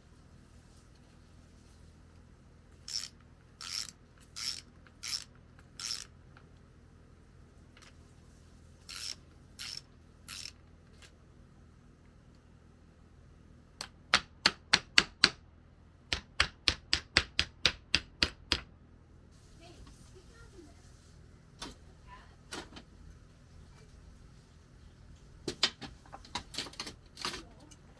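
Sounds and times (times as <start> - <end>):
bike ratcheting clicks: 2.9 - 6.1, 8.9 - 10.6.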